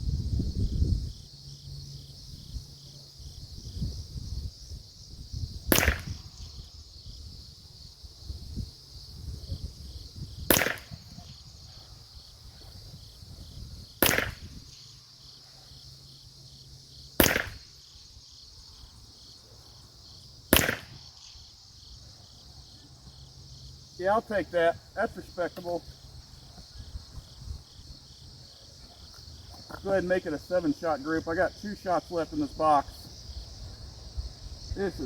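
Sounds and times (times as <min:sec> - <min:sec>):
wind rumble on microphone: 0:00.0 - 0:14.8, 0:26.0 - 0:29.1, 0:33.2 - 0:35.0
high insect buzz: 0:00.0 - 0:35.0
rifle shots: 0:05.7 - 0:06.4, 0:10.5 - 0:11.2, 0:14.0 - 0:14.6, 0:17.2 - 0:17.7, 0:20.5 - 0:21.1.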